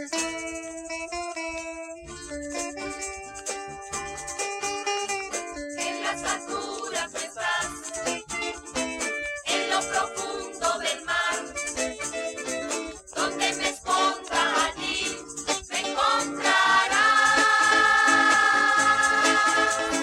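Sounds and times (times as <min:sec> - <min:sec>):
short percussion strokes: 0:02.1 - 0:20.0
christian youth song: 0:05.8 - 0:08.4, 0:09.4 - 0:20.0.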